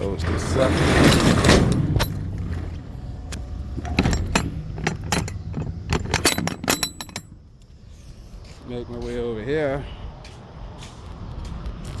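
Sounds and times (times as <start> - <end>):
metal parts clicking and clinking: 3.8 - 7.5.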